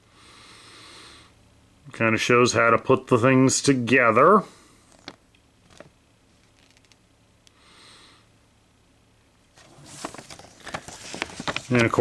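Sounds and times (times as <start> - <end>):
paper sheet crackling and rustling: 5.0 - 6.9, 9.6 - 12.0
soft breath: 7.5 - 8.3.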